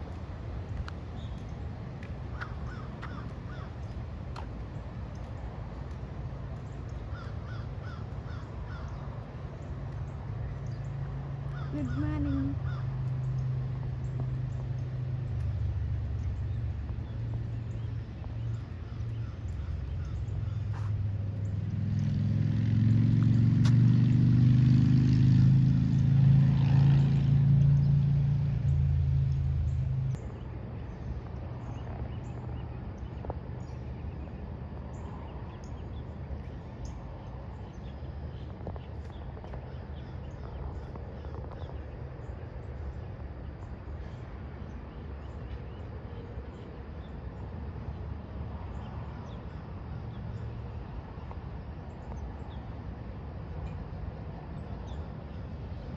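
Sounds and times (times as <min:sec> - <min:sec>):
low steady rumble: 0:00.0 - 0:24.6, 0:25.4 - 0:55.9
vehicle engine running: 0:09.7 - 0:34.4.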